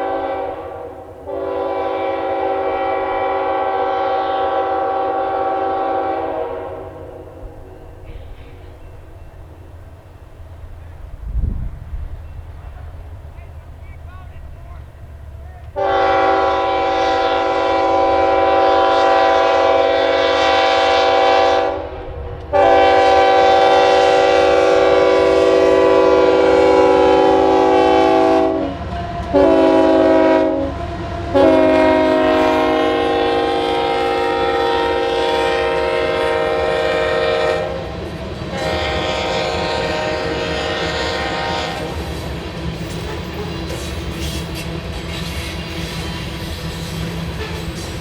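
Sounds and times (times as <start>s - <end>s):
locomotive air horn blasts: 0.0s - 8.3s, 15.7s - 37.8s, 38.5s - 42.1s
train rumble: 0.0s - 48.0s.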